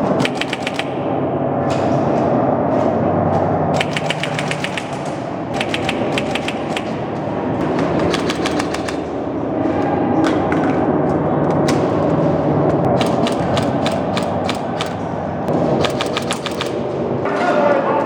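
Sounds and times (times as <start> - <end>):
airsoft guns firing bursts: 0.0 - 1.1, 3.8 - 9.2, 12.9 - 17.0
steady low noise: 0.0 - 17.3.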